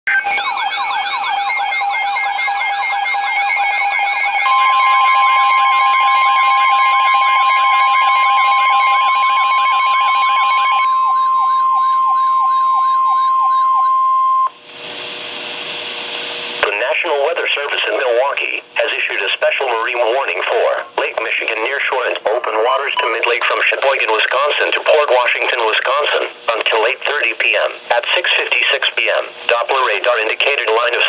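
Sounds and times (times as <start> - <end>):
siren-like wailing tones: 0.1 - 14.5
steady warning alarm tone: 0.1 - 14.6
radio hiss: 14.7 - 31.0.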